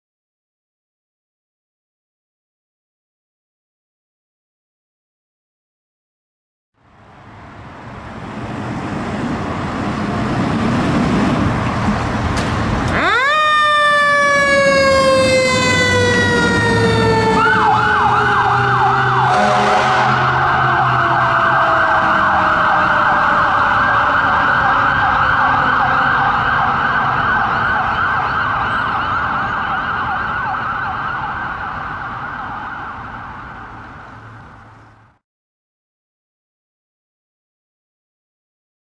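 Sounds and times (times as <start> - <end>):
fire engine engine: 6.8 - 35.2
siren winding up and falling: 12.9 - 26.3
electronic siren yelp: 12.9 - 33.0.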